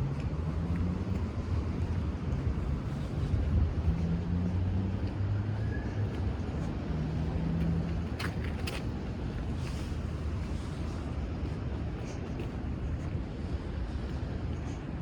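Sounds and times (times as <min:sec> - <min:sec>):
passing traffic rumble: 0:00.0 - 0:15.0.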